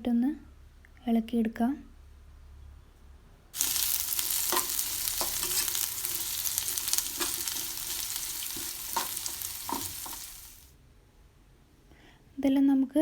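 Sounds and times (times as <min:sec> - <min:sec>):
food sizzling in hot oil: 0:03.6 - 0:10.7.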